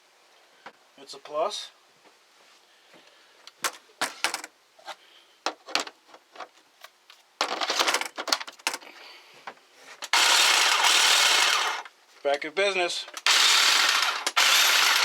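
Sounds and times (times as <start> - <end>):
tools and plastic parts clicking: 5.5 - 8.9
loud rattling noise: 10.1 - 11.9, 13.2 - 15.0.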